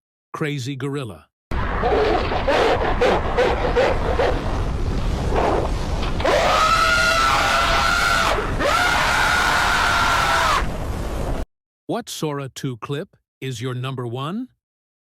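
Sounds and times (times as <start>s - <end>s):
person screaming: 6.2s - 10.7s.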